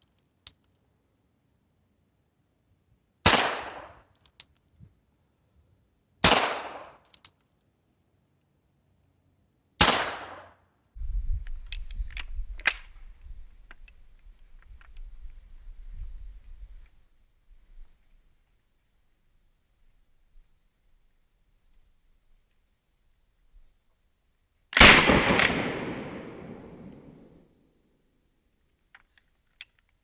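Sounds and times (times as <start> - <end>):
small clicks: 0.0 - 0.9, 3.8 - 4.9, 6.8 - 7.7, 28.7 - 30.0.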